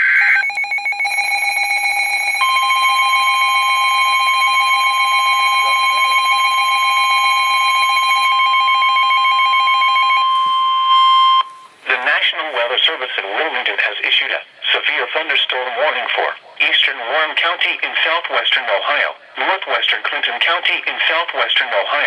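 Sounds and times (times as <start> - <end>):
rapidly pulsing alarm beep: 0.0 - 11.7
steady alarm tone: 0.0 - 11.8.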